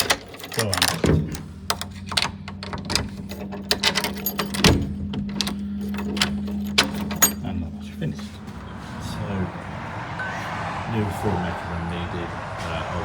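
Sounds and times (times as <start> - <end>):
door lock and handle clicking: 0.0 - 7.5.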